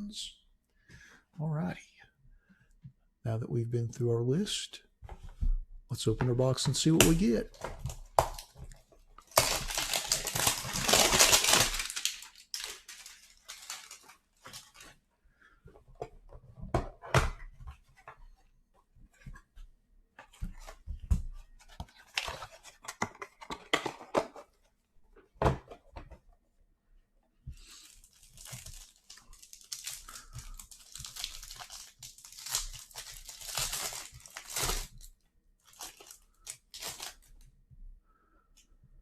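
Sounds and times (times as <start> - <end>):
crinkling: 6.8 - 16.5, 27.6 - 37.5.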